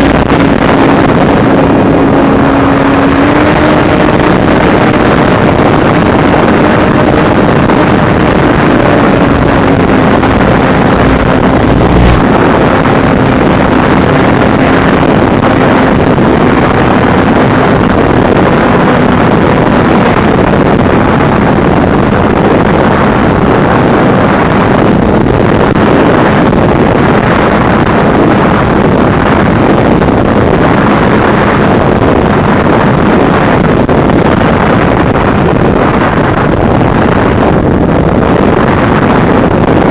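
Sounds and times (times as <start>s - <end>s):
faint steady whine: 0.0s - 21.0s
drone wind and motor noise: 0.0s - 39.9s.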